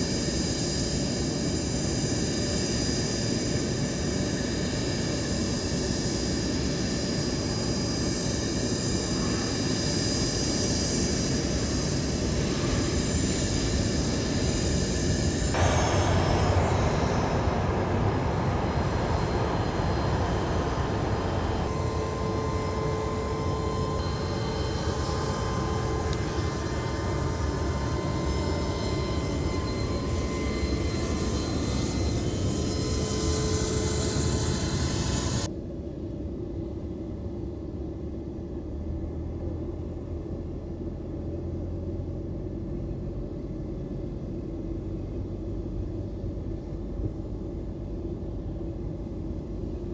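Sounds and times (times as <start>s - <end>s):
jet engines running: 0.0s - 35.5s
low rumble: 13.6s - 35.5s.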